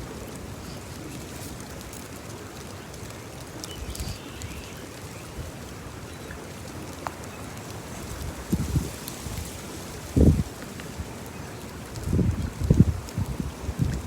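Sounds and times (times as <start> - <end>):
wind gusting on microphone: 7.9 - 11.2, 11.8 - 14.0.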